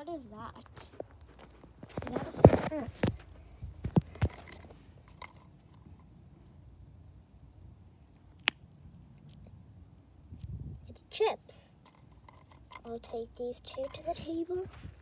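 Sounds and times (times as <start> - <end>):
soft handling thumps: 0.7 - 5.8.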